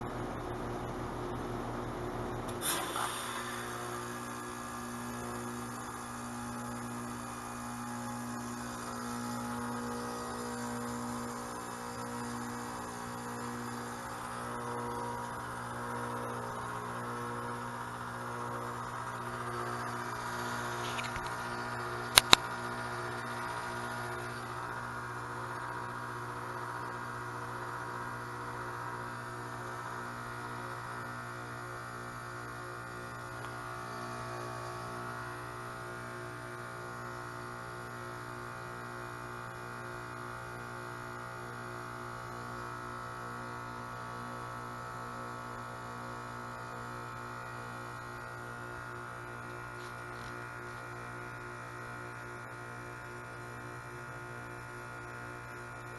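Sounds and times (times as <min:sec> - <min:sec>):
heat pump compressor humming: 0:00.0 - 0:55.9
hiss: 0:02.5 - 0:04.4
sharp clicks: 0:22.1 - 0:22.5.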